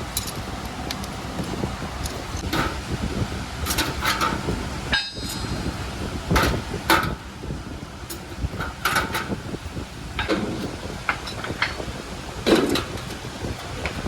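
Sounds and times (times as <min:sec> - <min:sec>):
low rumble: 0:00.0 - 0:14.0
hammer blows on iron: 0:02.4 - 0:09.6.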